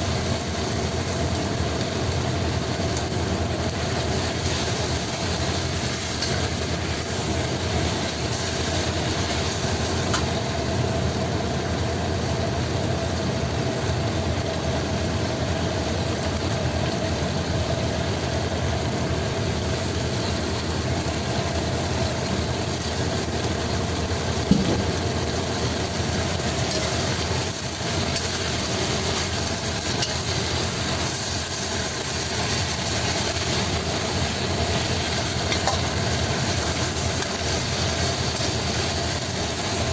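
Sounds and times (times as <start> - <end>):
wok cooking hum and hiss: 0.0 - 39.9
brief knock: 24.5 - 25.0.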